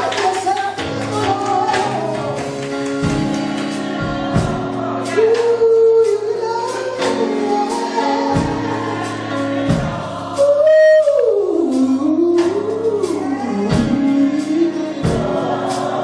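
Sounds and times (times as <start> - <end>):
sustained keyboard chords: 0.0 - 16.0.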